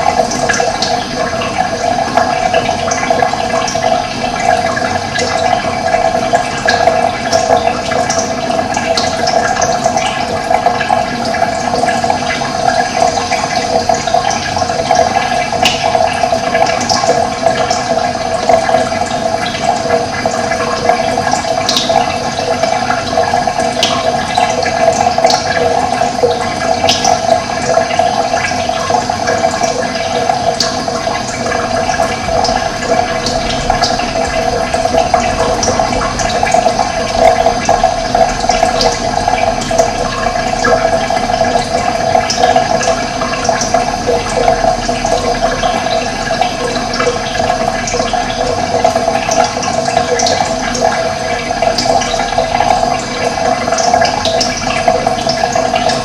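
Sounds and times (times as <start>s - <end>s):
running water rushing: 0.0s - 56.0s.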